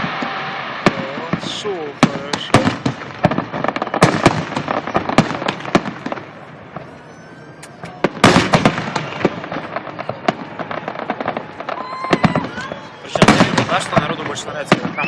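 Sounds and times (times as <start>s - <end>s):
fireworks bangs and crackling: 0.0s - 15.0s
fireworks rising whistles: 3.6s - 15.0s.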